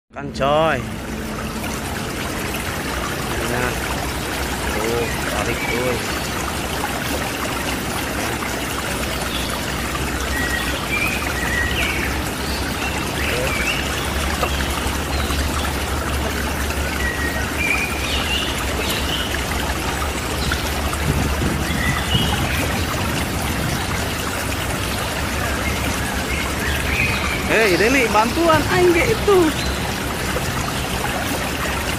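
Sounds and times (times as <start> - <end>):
running water rushing: 0.1 - 31.9
small birds chirping: 9.1 - 24.0, 24.6 - 31.9.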